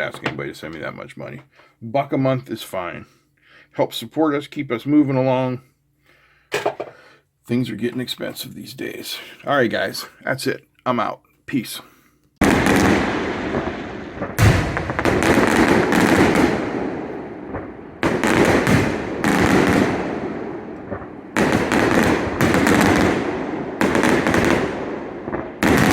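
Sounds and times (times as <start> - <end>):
fireworks bursting and crackling: 12.4 - 25.9.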